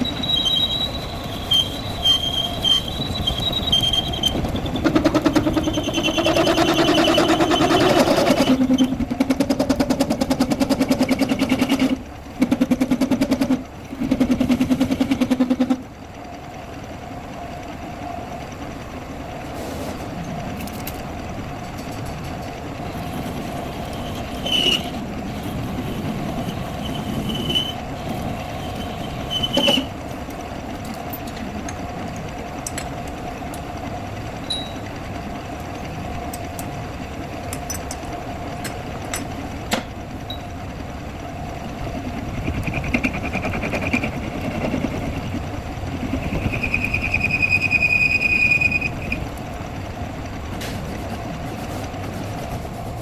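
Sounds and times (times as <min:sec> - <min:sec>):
high-pitched whine: 0:00.0 - 0:09.0
metal clicks and knocks: 0:37.5 - 0:40.4.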